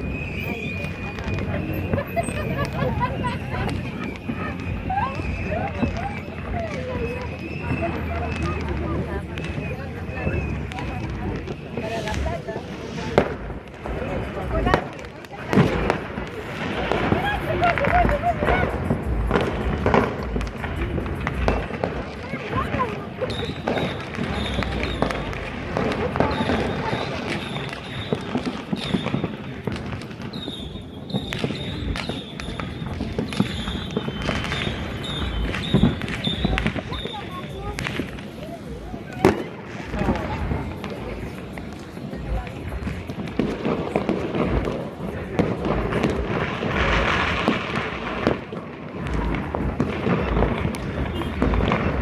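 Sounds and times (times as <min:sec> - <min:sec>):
high steady whistle: 0:00.0 - 0:14.6, 0:23.2 - 0:29.6, 0:30.3 - 0:37.7
distant fireworks bangs and crackles: 0:00.0 - 0:52.0.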